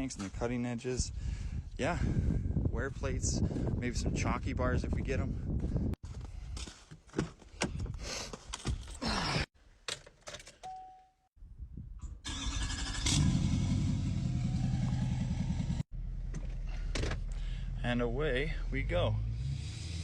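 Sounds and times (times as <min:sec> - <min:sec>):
truck engine starting and running: 0:12.1 - 0:20.0.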